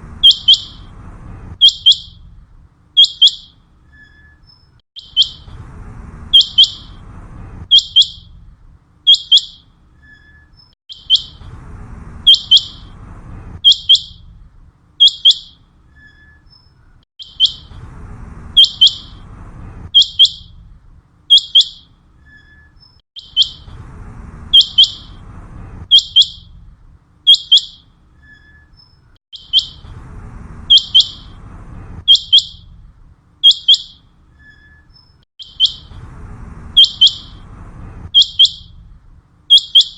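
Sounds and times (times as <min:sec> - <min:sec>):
faint low rumble: 0:00.0 - 0:04.0, 0:05.0 - 0:09.0, 0:11.0 - 0:15.9, 0:16.8 - 0:21.3, 0:23.2 - 0:27.2, 0:29.4 - 0:33.4, 0:35.5 - 0:39.5
quail whistled song: 0:00.1 - 0:01.0, 0:01.6 - 0:02.3, 0:03.0 - 0:05.6, 0:06.3 - 0:07.0, 0:07.7 - 0:08.4, 0:09.1 - 0:11.5, 0:12.2 - 0:14.3, 0:15.0 - 0:17.8, 0:18.5 - 0:20.6, 0:21.3 - 0:23.8, 0:24.4 - 0:26.6, 0:27.3 - 0:29.9, 0:30.6 - 0:32.8, 0:33.4 - 0:36.0, 0:36.7 - 0:38.8, 0:39.5 - 0:39.9.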